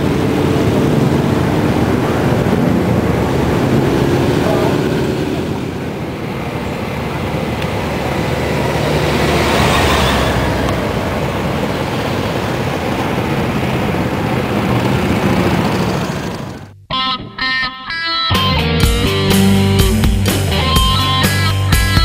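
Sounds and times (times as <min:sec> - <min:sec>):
motorcycle engines rumbling: 0:00.0 - 0:16.9.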